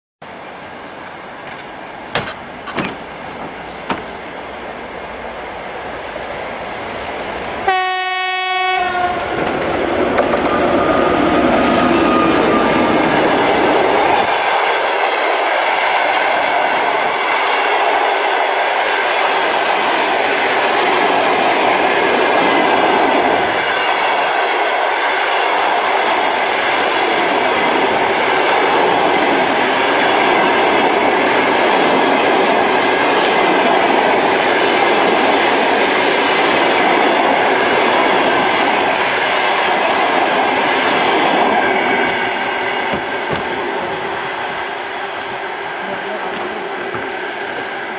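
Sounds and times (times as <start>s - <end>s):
train wheels on rails: 0.2s - 8.0s, 8.7s - 47.9s
clickety-clack over rail joints: 1.0s - 4.8s, 9.2s - 11.6s, 15.6s - 47.9s
diesel locomotive horn: 7.6s - 9.4s.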